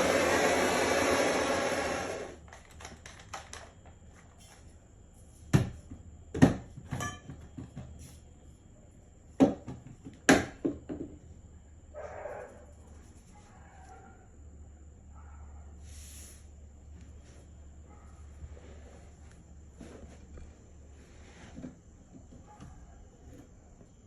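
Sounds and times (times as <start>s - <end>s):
soldering torch hissing: 0.0s - 2.4s.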